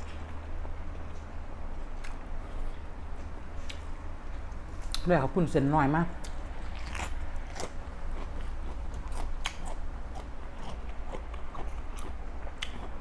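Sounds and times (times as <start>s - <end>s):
low steady hum: 0.0s - 13.0s
person chewing crunchy food: 6.2s - 13.0s.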